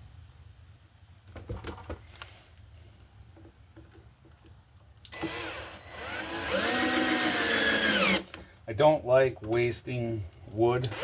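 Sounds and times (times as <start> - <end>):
power drill driving a screw: 5.1 - 8.4.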